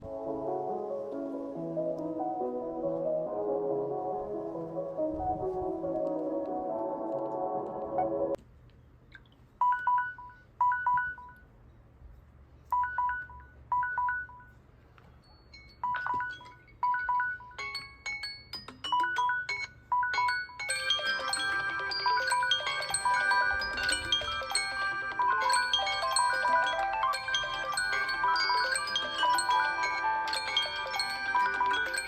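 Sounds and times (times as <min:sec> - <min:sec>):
smartphone alert beeps: 0:09.6 - 0:11.4, 0:12.7 - 0:14.5, 0:15.8 - 0:17.6
chiming melody: 0:15.2 - 0:32.0.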